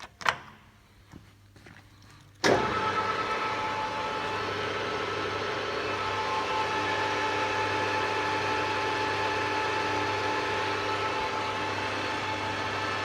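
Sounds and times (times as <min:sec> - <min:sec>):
lathe running with whine: 0:02.5 - 0:13.0.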